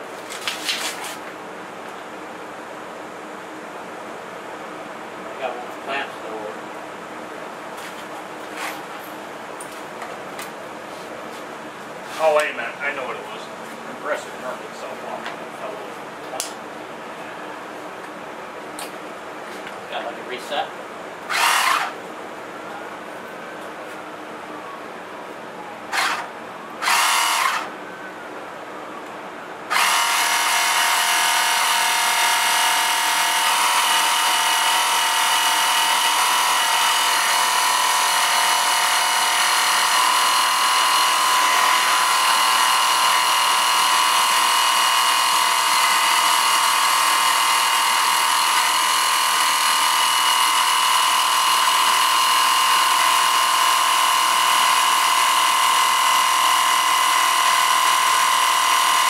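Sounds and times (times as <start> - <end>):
air compressor motor whine: 21.3 - 22.0, 25.8 - 59.0.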